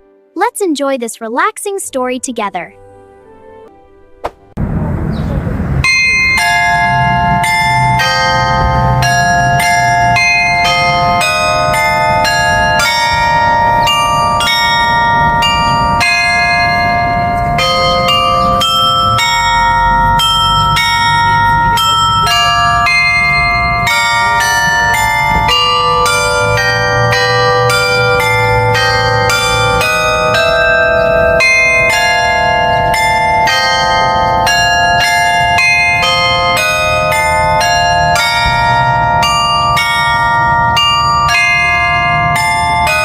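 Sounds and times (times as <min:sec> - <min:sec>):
carillon bells playing melody: 0:05.8 - 0:43.0.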